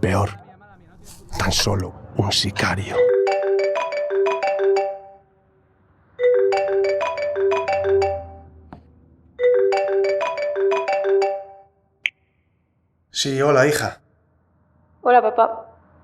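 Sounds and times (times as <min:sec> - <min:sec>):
marimba phone ringtone: 0:03.0 - 0:05.2, 0:06.2 - 0:08.6, 0:09.4 - 0:11.7.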